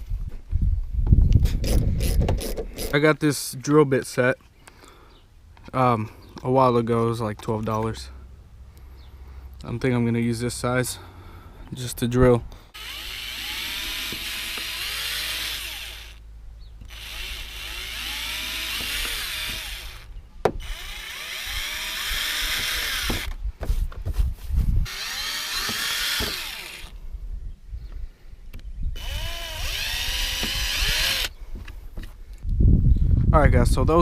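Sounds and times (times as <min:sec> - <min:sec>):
power drill boring through plastic: 0:01.6 - 0:03.0, 0:12.7 - 0:16.2, 0:16.8 - 0:23.4, 0:24.9 - 0:27.0, 0:29.0 - 0:31.3.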